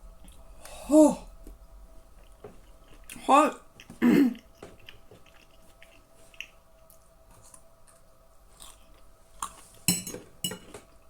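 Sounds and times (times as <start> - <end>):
faint steady hum: 0.0 - 11.0
person chewing food: 2.1 - 9.9.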